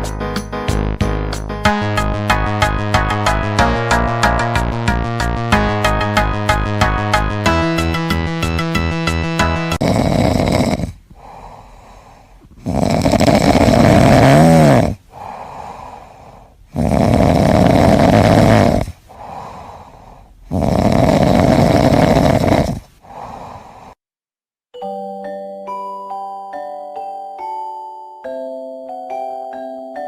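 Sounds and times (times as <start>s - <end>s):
cat snoring: 9.8s - 24.0s
cat breathing quietly: 11.1s - 12.7s, 15.0s - 16.7s, 18.9s - 20.5s, 22.9s - 24.0s.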